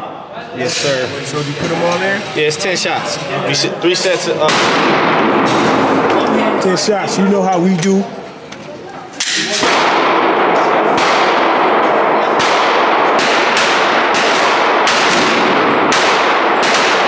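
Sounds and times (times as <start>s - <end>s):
handgun shots with echo: 9.2s - 17.0s.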